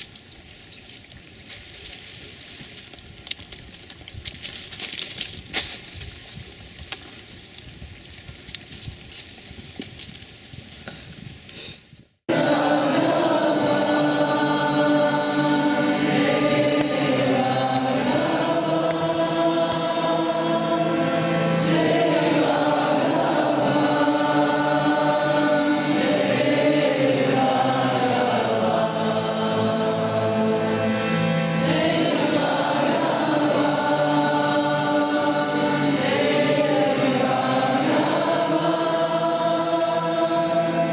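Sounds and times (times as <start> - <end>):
low background noise: 12.3 - 40.9
voices chanting in unison: 12.3 - 40.9.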